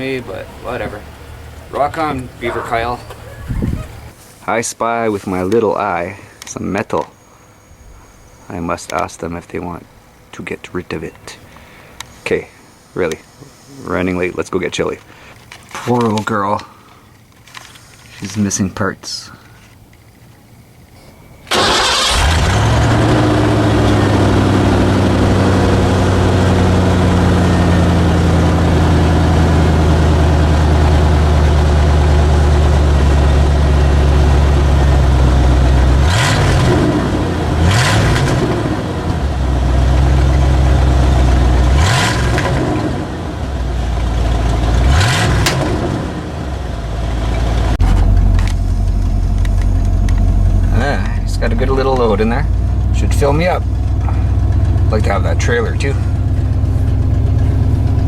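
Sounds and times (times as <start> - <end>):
car engine running and revving: 22.1 - 58.0.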